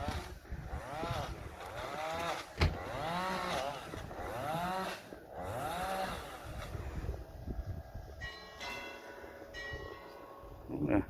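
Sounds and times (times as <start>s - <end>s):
small petrol engine revving: 0.0s - 7.4s.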